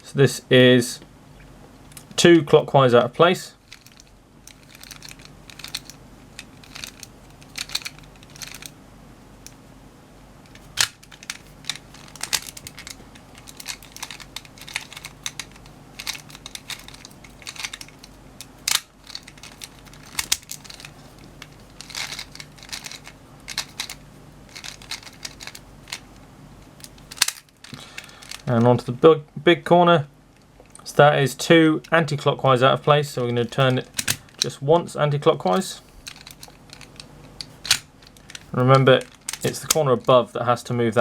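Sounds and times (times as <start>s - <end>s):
plastic puzzle clicking and clacking: 3.7s - 8.7s, 10.5s - 26.0s, 26.8s - 28.6s, 33.5s - 34.6s, 35.5s - 40.1s.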